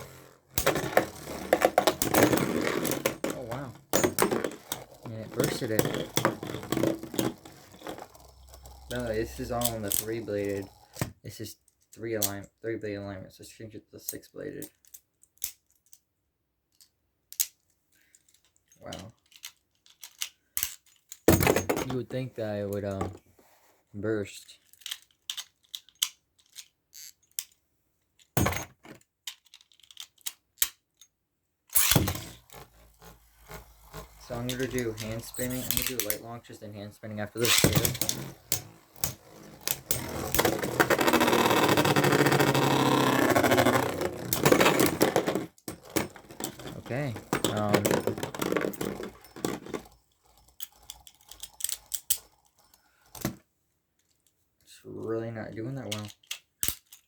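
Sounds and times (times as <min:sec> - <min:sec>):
plastic spinning tops clacking: 0:00.0 - 0:11.1, 0:31.8 - 0:53.4.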